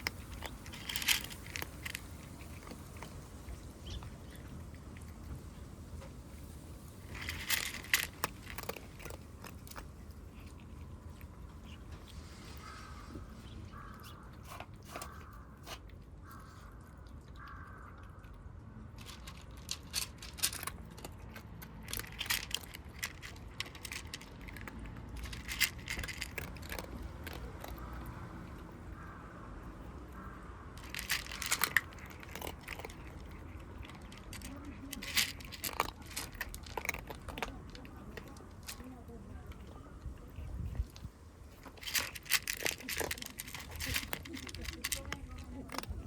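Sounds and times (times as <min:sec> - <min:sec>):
kittens crunching dry food: 0:00.0 - 0:46.0.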